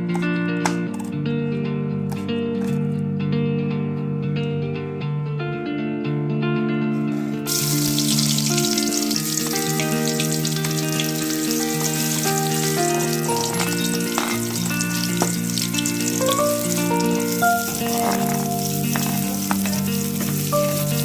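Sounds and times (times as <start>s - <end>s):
guitar music: 0.0s - 21.0s
food sizzling in hot oil: 7.5s - 21.0s.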